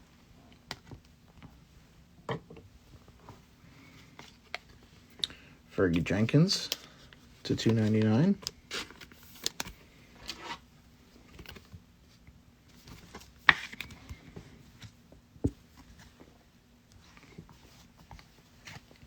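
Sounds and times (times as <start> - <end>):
trading cards rustling: 6.0 - 10.4.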